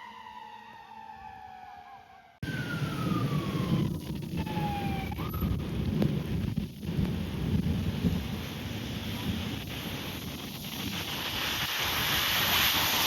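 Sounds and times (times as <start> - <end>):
fire siren wailing: 0.0 - 6.4.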